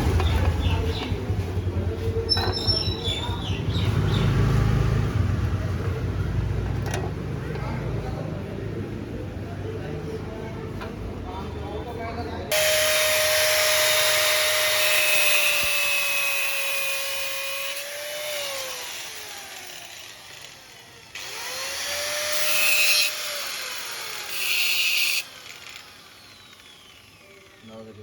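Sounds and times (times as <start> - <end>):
angle grinder cutting screw: 12.5 - 27.9
grinder winding down whine: 12.5 - 28.0.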